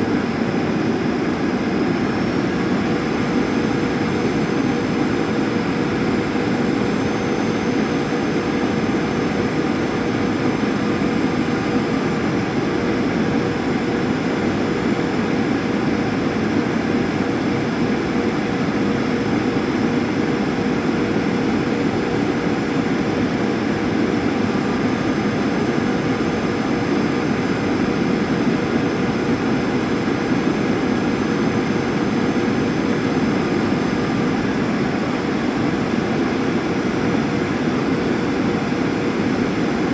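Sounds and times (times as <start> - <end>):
airliner cabin engine rush: 0.0 - 39.9.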